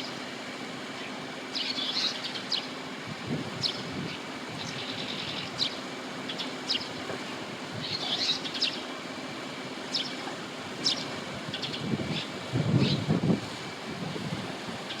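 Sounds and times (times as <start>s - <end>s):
swallows chirping: 7.8s - 8.8s.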